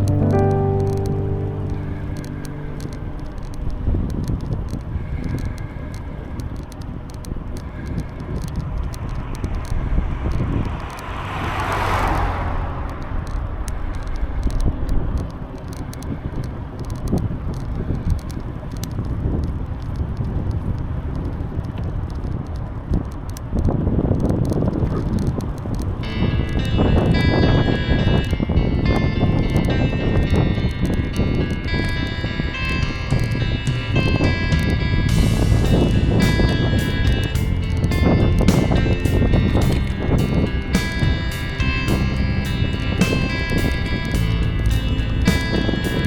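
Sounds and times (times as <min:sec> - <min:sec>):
bicycle tyre noise: 0:02.2 - 0:46.0
wind on microphone: 0:02.7 - 0:46.0
whoosh: 0:09.2 - 0:14.7, 0:35.1 - 0:46.0.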